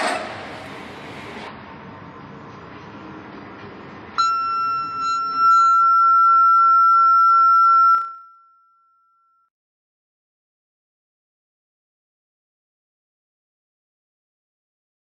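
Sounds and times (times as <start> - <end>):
high-pitched alarm tone: 4.2 - 9.3.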